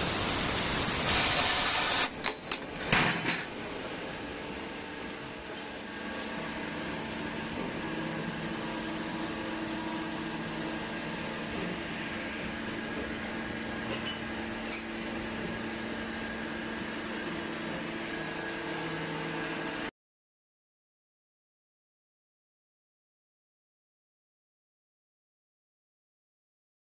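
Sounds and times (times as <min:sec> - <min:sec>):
pipe-cutting saw machine hum: 0:00.0 - 0:02.2, 0:04.5 - 0:19.9.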